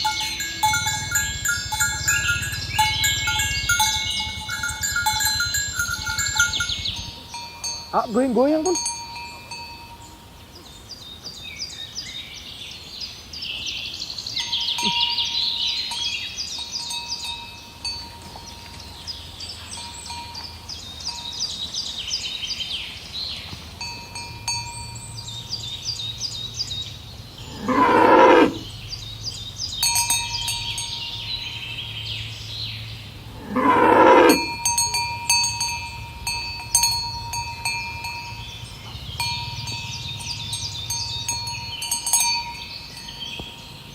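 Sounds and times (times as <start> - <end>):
cattle bells clinking: 0.0 - 10.5, 14.3 - 22.4, 23.5 - 26.4, 29.5 - 32.6, 33.3 - 43.9
cow mooing: 27.4 - 28.7, 33.3 - 34.6.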